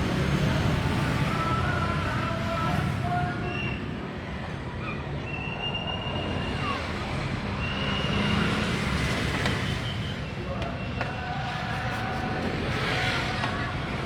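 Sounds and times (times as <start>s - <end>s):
street traffic rumble: 0.0s - 14.0s
faint voices: 10.2s - 14.0s.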